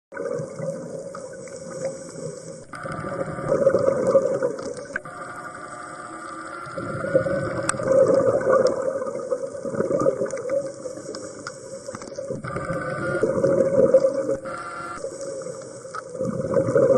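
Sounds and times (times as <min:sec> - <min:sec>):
steady underwater hum: 0:00.1 - 0:16.9
underwater bubbling and gurgling: 0:00.1 - 0:16.9.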